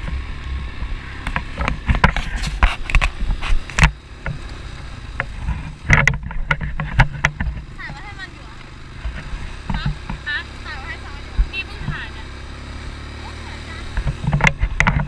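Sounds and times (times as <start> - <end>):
atv engine rumbling: 0.0 - 15.0
knocks and rattles: 1.2 - 4.5, 5.1 - 8.3, 13.9 - 15.0.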